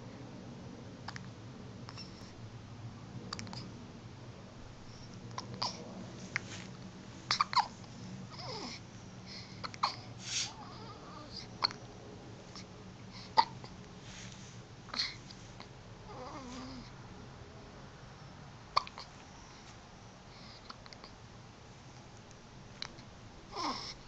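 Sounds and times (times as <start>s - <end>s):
baby hiccupping: 3.3s - 3.7s, 5.3s - 5.8s, 7.3s - 8.8s, 9.6s - 11.8s, 13.2s - 13.8s, 18.8s - 19.2s.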